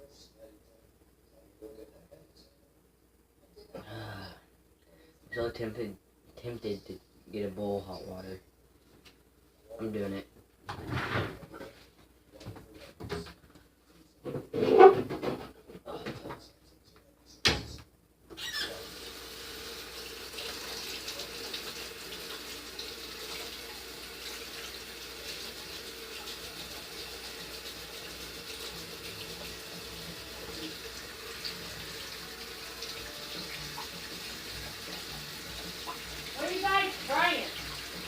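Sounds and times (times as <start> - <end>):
tap water filling a bowl: 18.8 - 38.0.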